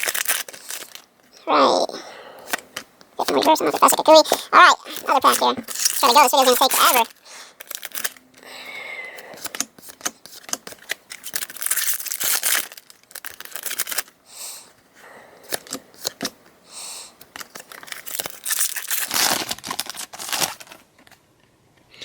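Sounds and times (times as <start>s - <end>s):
foil wrapper tearing and crinkling: 0.0s - 1.1s, 3.6s - 8.2s, 9.8s - 14.2s, 17.4s - 20.8s
cards being handled: 2.5s - 8.2s, 9.3s - 14.1s, 15.5s - 16.4s, 17.2s - 21.2s.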